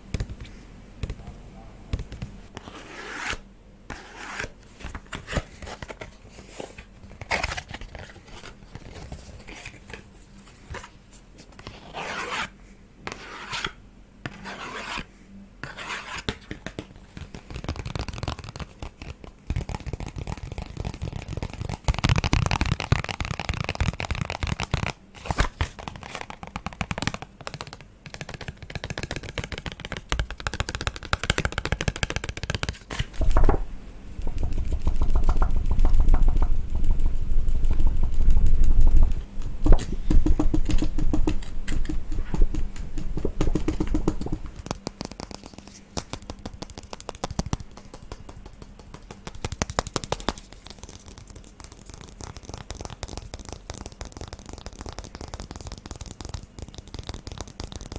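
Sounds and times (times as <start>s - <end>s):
fingers tapping and scratching: 25.7s - 33.5s, 34.2s - 57.9s.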